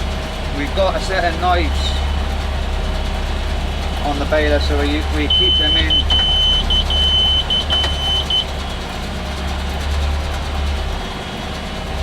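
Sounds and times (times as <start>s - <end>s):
tractor engine running: 0.0s - 12.0s
high steady beeps: 5.2s - 8.5s.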